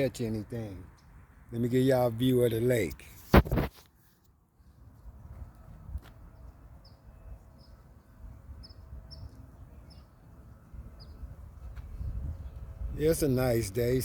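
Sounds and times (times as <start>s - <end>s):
bird chirping: 6.4s - 10.3s, 10.9s - 11.3s.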